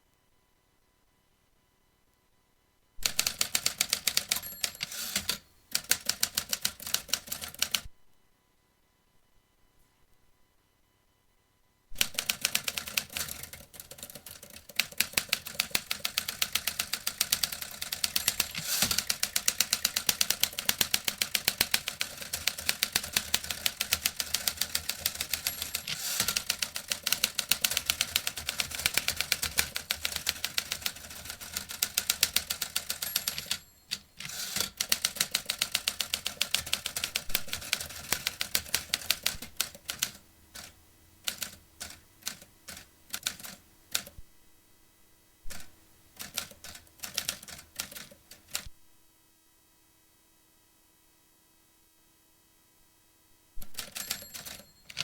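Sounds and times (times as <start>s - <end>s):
typewriter key clacks: 3.0s - 7.8s, 14.8s - 39.4s, 53.6s - 55.0s.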